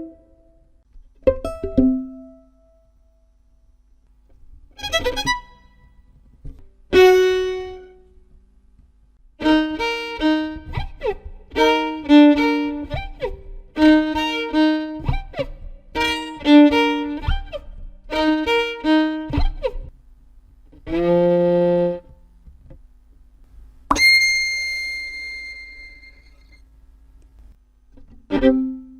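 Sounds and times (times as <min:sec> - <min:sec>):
violin playing: 0:06.9 - 0:08.0, 0:09.4 - 0:19.6.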